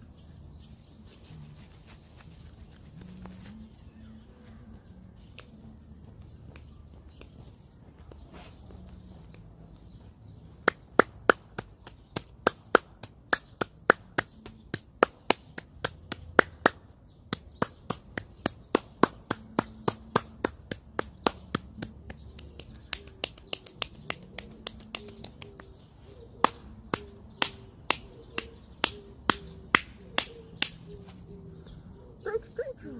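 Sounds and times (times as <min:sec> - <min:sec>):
sharp clicks or slaps: 0:10.6 - 0:25.8, 0:26.4 - 0:31.0.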